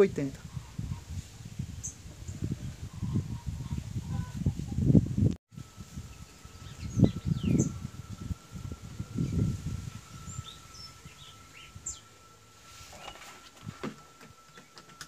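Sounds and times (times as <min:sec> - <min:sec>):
small birds chirping: 0:00.0 - 0:04.4, 0:05.8 - 0:13.2
faint steady high tone: 0:05.6 - 0:15.0.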